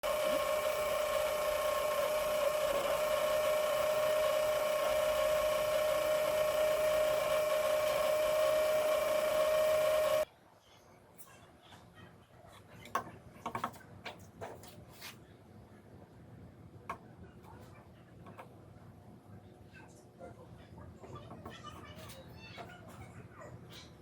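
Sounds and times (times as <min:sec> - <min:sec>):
small electric motor whining: 0:00.0 - 0:10.2.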